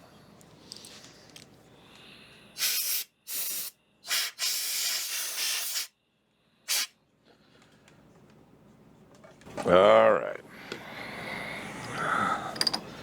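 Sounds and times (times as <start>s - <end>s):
compressed air blasts: 2.6s - 6.0s, 6.6s - 7.0s.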